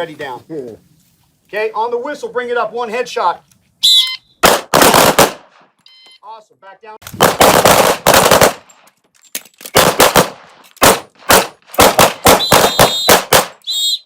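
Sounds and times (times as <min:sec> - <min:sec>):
short high whistle tone: 0:03.8 - 0:04.4, 0:12.4 - 0:14.0
handgun shots: 0:04.4 - 0:05.4, 0:09.7 - 0:13.6.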